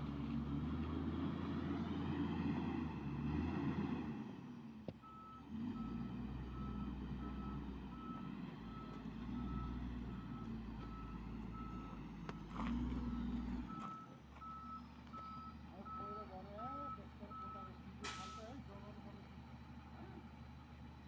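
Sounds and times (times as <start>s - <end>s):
diesel engine running: 0.0s - 21.0s
reversing alarm beeping: 5.0s - 12.6s, 13.6s - 18.4s.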